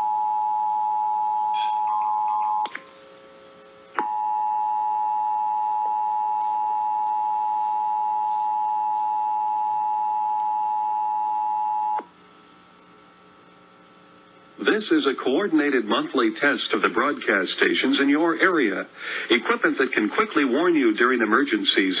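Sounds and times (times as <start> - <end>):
faint hum: 0.0 - 22.0
two-tone alert signal: 1.4 - 2.7.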